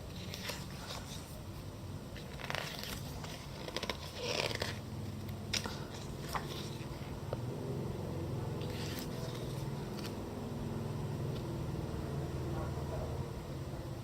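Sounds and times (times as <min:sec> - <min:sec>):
faint steady hum: 0:00.0 - 0:14.0
magazine pages rustling: 0:00.1 - 0:07.2, 0:08.6 - 0:10.2.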